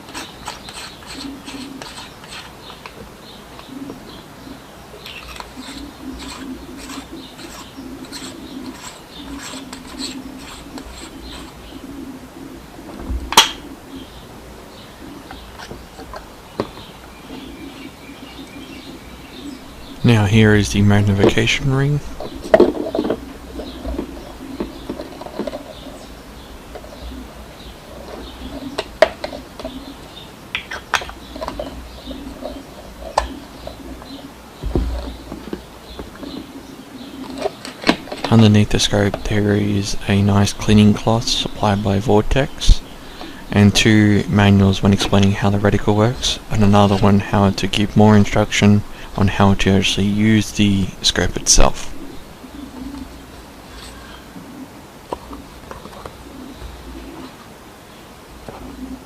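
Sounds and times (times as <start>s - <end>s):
clicks and knocks of handling: 30.5s - 33.8s, 37.2s - 38.4s.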